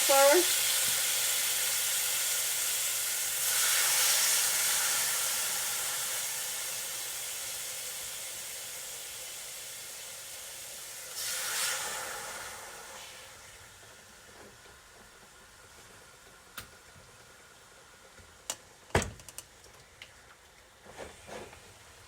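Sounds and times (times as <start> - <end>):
steak sizzling in a pan: 0.0 - 14.9.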